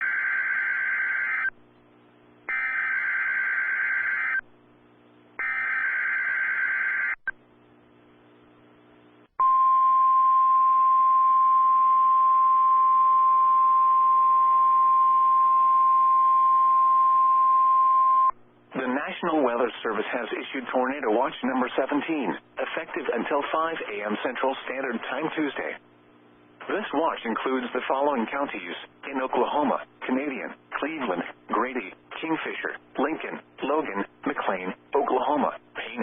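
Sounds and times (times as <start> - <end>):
steady warning alarm tone: 5.4 - 7.2.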